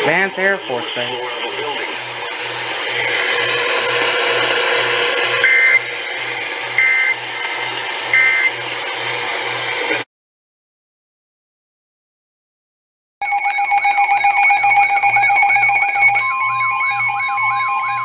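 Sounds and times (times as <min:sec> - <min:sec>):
radio static with pulsing buzz: 0:00.0 - 0:02.8.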